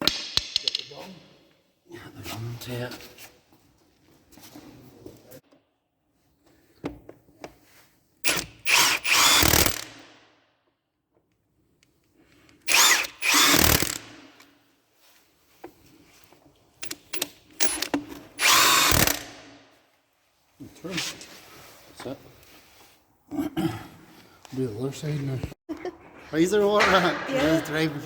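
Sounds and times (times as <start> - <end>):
power drill running: 8.3 - 10.0, 12.7 - 14.2, 16.8 - 19.4.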